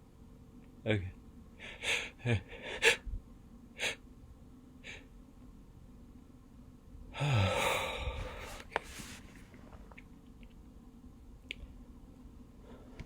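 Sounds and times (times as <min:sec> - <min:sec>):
man breathing quickly: 0:07.2 - 0:09.0.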